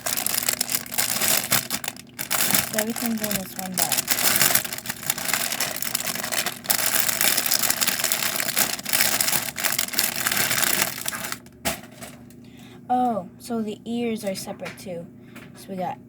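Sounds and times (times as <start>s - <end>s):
plastic bag crinkling: 0.0s - 12.3s.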